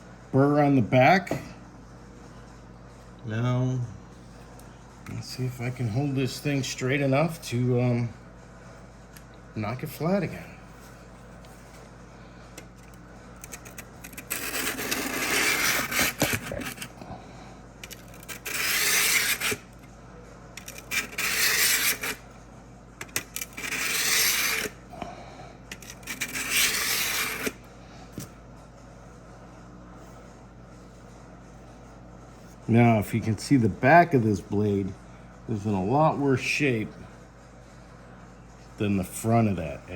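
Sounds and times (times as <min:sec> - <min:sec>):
blade scraping on sharpening plate: 0:14.1 - 0:16.9, 0:18.0 - 0:19.7, 0:20.6 - 0:22.2, 0:23.2 - 0:24.8, 0:25.7 - 0:27.6.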